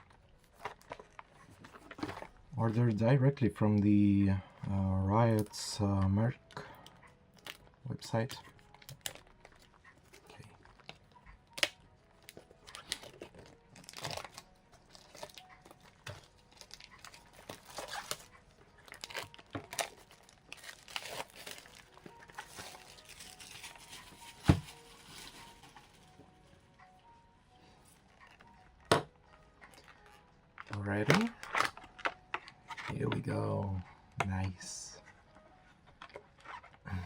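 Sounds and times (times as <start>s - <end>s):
packaging crinkling and tearing: 0.0s - 2.4s, 6.4s - 26.2s, 29.7s - 33.2s.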